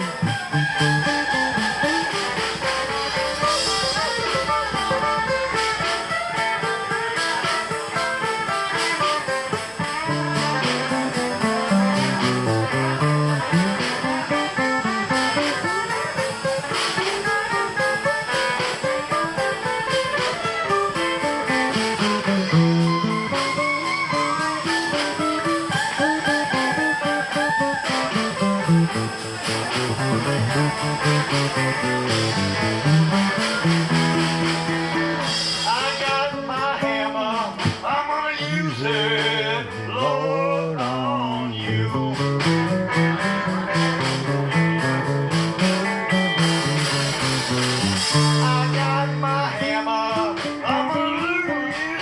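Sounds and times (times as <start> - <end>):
blues-rock band playing: 0.0 - 52.0
drum beat: 0.0 - 52.0
electric guitar lines: 0.0 - 52.0.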